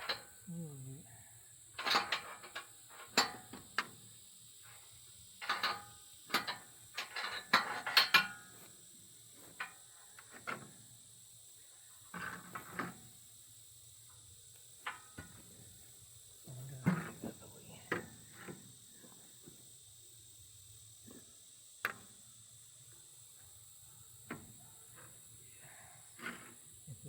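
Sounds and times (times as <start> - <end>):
metal tool clanks and clicks: 1.8 - 3.4.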